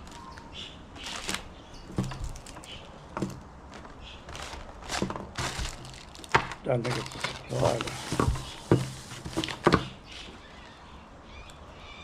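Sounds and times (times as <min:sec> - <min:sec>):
short rustles: 0:03.7 - 0:10.4.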